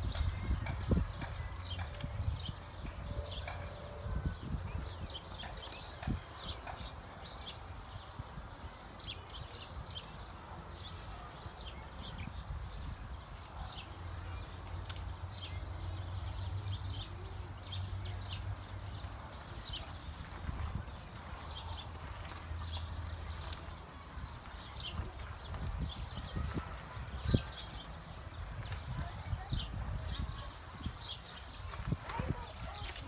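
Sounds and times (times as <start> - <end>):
giraffes stripping and chewing leaves: 13.2 - 33.0.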